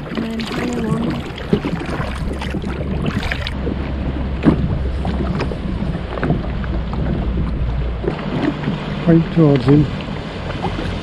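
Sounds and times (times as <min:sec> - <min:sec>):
kayak paddles splashing water: 0:00.0 - 0:11.0
steady low rumble: 0:00.0 - 0:11.0.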